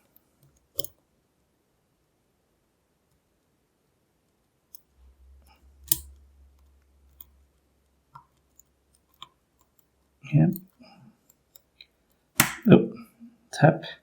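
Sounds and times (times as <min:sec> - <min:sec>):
lock pick clicking on pins: 0:00.1 - 0:01.0, 0:05.8 - 0:07.3, 0:08.2 - 0:11.9.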